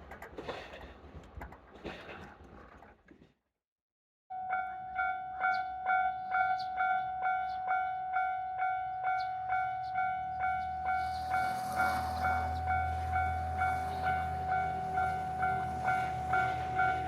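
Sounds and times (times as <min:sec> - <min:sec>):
approaching train: 0:00.0 - 0:03.0, 0:04.4 - 0:17.0
level-crossing alarm ringing: 0:04.3 - 0:17.0.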